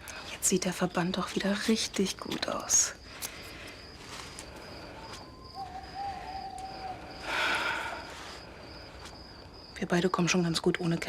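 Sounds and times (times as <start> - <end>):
cricket chirping: 0.0 - 11.0
held bird-like note: 5.3 - 7.1.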